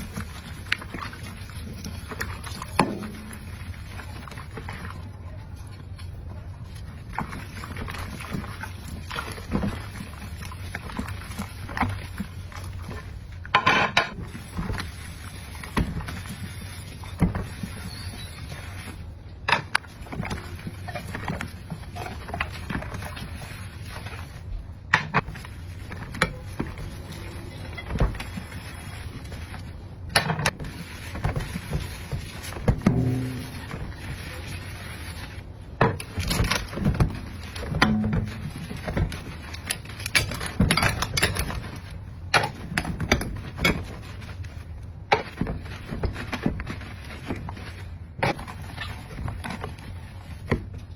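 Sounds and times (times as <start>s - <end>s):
water sloshing: 0.0s - 5.8s
dishes and utensils clinking: 13.6s - 14.2s.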